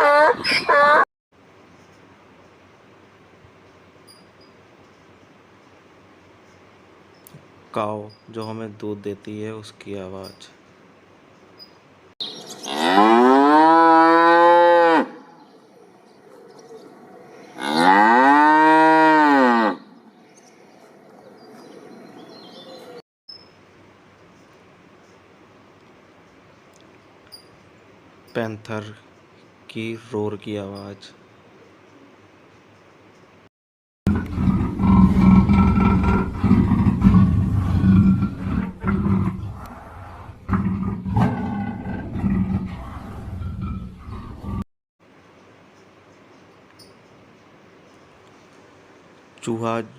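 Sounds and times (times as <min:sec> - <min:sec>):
cow mooing: 0:12.7 - 0:15.2, 0:17.6 - 0:19.8, 0:34.1 - 0:43.8
panther roaring and growling: 0:34.1 - 0:44.6.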